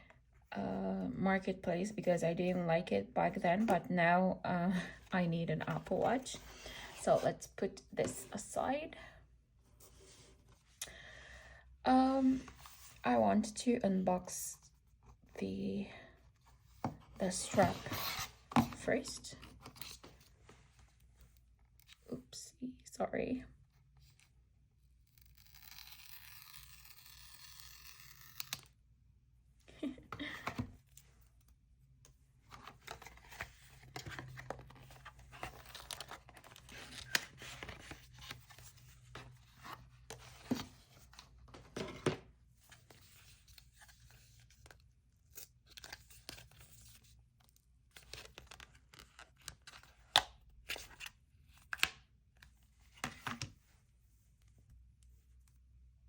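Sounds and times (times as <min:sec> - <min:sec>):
cardboard packaging tearing: 0:25.1 - 0:28.7.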